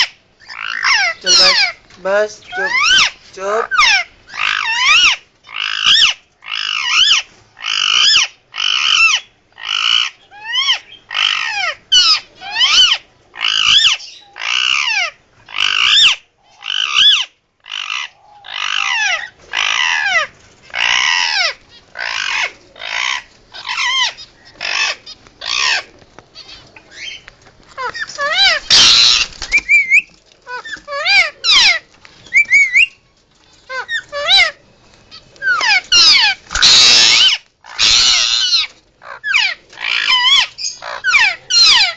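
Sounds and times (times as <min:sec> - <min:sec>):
parakeet screeching: 0:00.0 - 0:01.8, 0:02.5 - 0:27.2, 0:27.8 - 0:32.9, 0:33.7 - 0:41.9.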